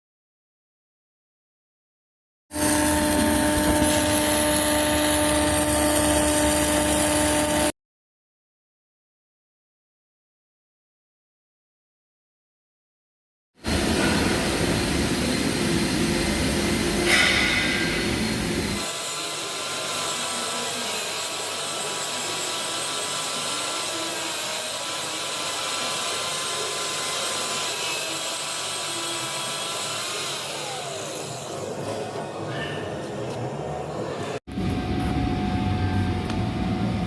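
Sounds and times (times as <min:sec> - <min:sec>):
heavy low machine rumble: 0:34.5 - 0:37.0.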